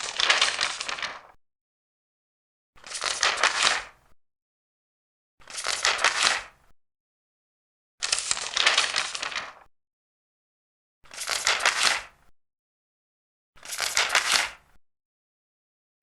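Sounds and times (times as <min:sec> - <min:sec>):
paper page turning: 0:00.0 - 0:01.4, 0:02.8 - 0:04.0, 0:05.4 - 0:06.5, 0:08.0 - 0:09.7, 0:11.1 - 0:12.1, 0:13.6 - 0:14.6.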